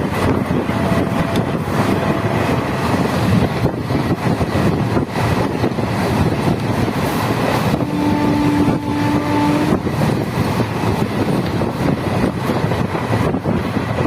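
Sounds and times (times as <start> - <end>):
train running rumble: 0.0 - 14.0
wind buffeting microphone: 0.0 - 14.0
train horn: 7.7 - 9.9.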